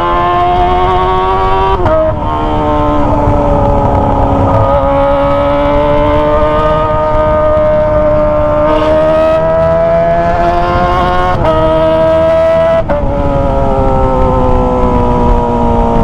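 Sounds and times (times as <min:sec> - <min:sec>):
motorcycle engine revving high: 0:00.0 - 0:16.0.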